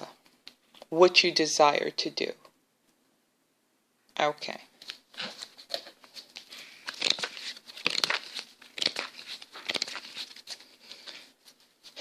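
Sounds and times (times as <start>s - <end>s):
crinkling and rustling handling noise: 4.7s - 12.0s.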